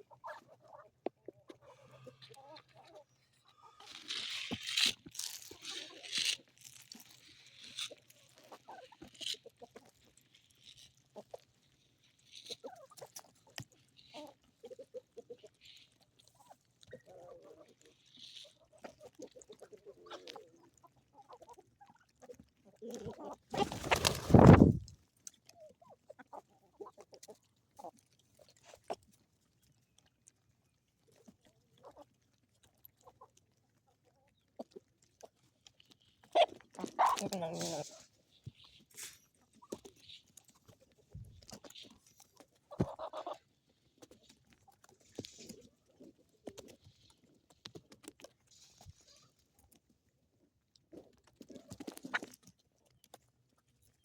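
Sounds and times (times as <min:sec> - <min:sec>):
chickens clucking: 0:00.1 - 0:03.8, 0:14.1 - 0:15.5, 0:18.8 - 0:21.9, 0:22.6 - 0:24.9, 0:36.3 - 0:38.7, 0:42.6 - 0:43.4.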